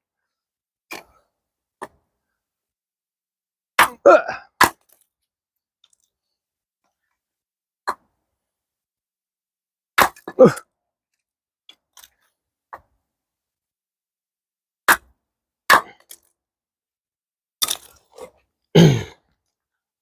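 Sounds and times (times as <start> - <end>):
axe splitting wood: 3.8 - 5.1, 10.0 - 10.6, 14.9 - 15.1, 15.7 - 16.3, 17.6 - 18.3.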